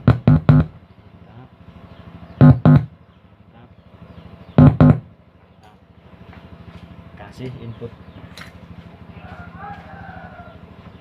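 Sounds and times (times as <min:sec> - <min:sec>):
bass-heavy music notes from speaker: 0:00.0 - 0:00.8, 0:02.4 - 0:03.0.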